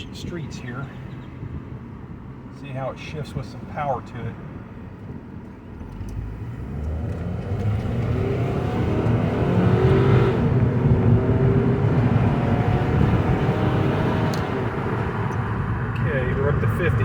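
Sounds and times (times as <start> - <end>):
car engine accelerating: 5.7 - 17.0.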